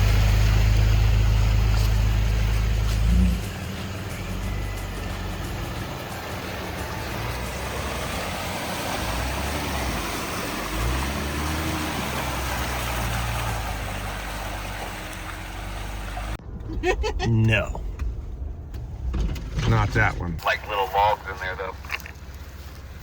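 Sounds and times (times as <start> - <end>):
vehicle engine revving: 0.0 - 16.4.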